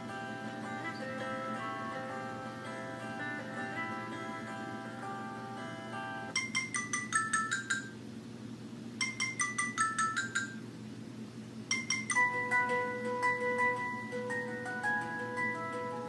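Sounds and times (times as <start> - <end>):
ringtone with held notes: 0.0 - 8.0, 9.0 - 10.7, 11.7 - 16.0
ringtone chiming notes: 6.0 - 8.0, 9.0 - 10.6, 11.7 - 16.0.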